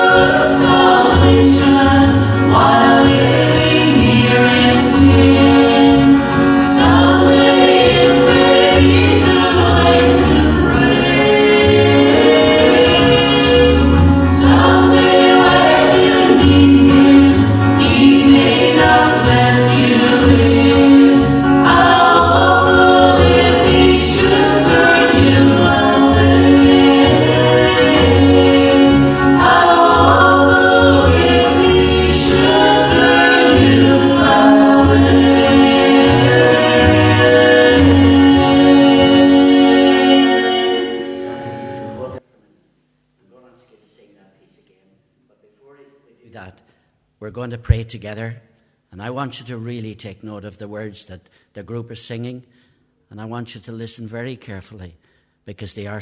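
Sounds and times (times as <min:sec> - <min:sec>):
gospel group singing in harmony: 0:00.0 - 0:42.2
held instrumental tone: 0:00.0 - 0:42.2
rhythmic bass line: 0:00.0 - 0:42.2.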